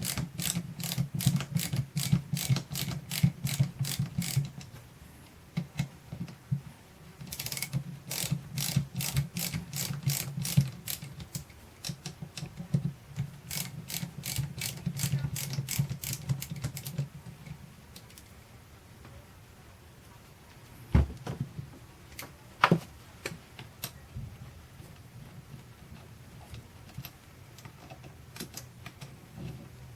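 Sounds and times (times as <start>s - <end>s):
ratchet wrench clicking: 0.0s - 4.6s, 7.3s - 11.2s, 13.5s - 17.0s.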